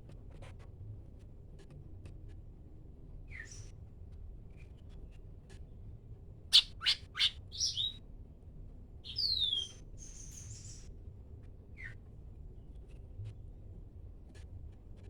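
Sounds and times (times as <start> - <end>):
songbird whistling: 6.6 - 8.0, 9.1 - 9.8.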